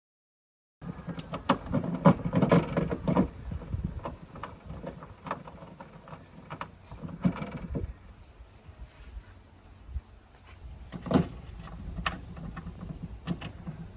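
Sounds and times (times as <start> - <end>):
clicks and knocks of latch parts: 0.9 - 7.9, 10.9 - 13.9.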